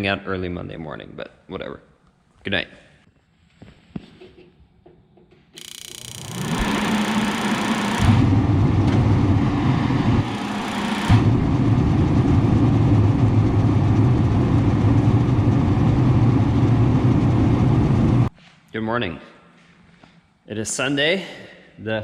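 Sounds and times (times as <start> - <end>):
engine running with low hum: 5.7 - 18.3.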